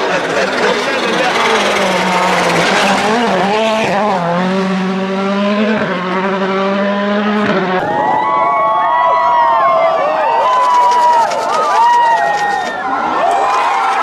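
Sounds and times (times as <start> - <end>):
car engine at high revs: 0.0 - 8.0
shifting curving tones: 0.0 - 8.3.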